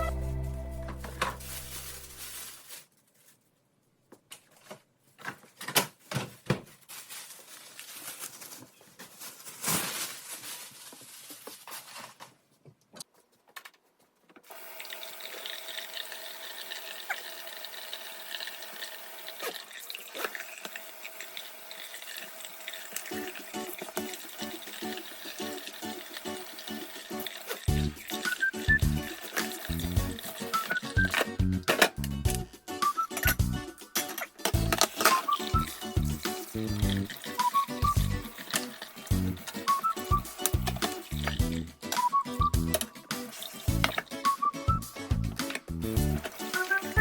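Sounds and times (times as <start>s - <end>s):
tap water running into sink: 14.5s - 31.2s, 34.5s - 42.0s, 42.6s - 44.4s, 46.2s - 47.0s.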